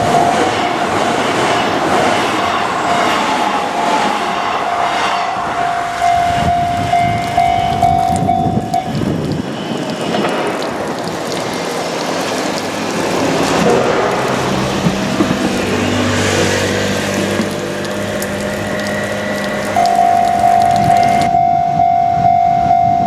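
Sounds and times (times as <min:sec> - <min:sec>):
level crossing warning bell: 0:00.0 - 0:01.0, 0:04.6 - 0:09.0, 0:18.7 - 0:23.0
train wheels clattering on rails: 0:00.0 - 0:21.3
train motors humming: 0:00.0 - 0:21.4.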